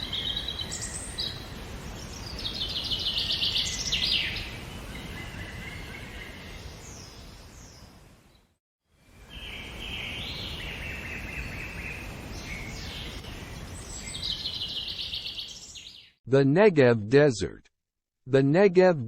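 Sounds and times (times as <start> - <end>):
birds calling and singing: 0.0 - 8.5, 9.1 - 16.2
outdoor background noise: 0.0 - 16.2.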